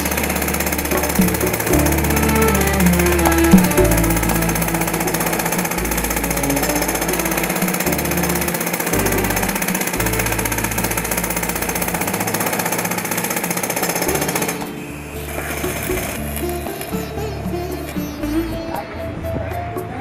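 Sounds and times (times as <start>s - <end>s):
background music with bass: 0.0s - 20.0s.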